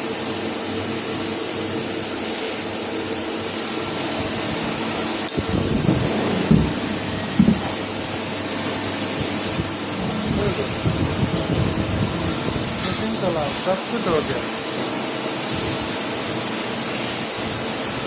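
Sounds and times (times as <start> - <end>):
cnc machine humming: 0.4 - 18.0
machine knocks and clicks: 5.2 - 13.1.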